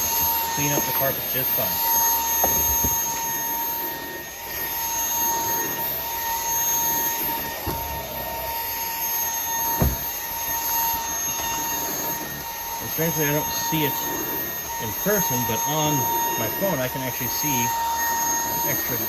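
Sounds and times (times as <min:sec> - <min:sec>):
stick vacuum running on carpet: 0:00.0 - 0:19.0
dull knocks: 0:09.8 - 0:10.2.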